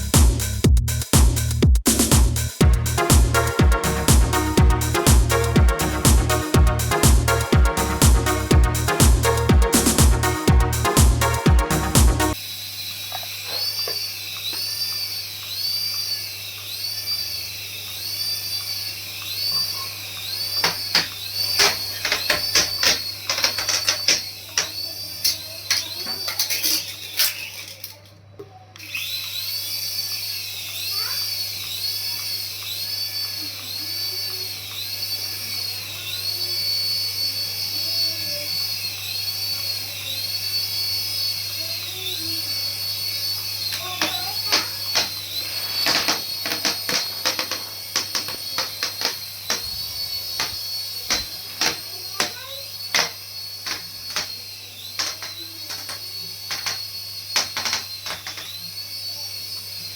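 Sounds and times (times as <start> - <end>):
steady low hum: 0.0 - 12.4
toy electric motor whining: 2.5 - 59.9
sharp clicks and knocks: 20.6 - 26.9, 43.7 - 49.8, 50.4 - 54.4, 55.0 - 58.6.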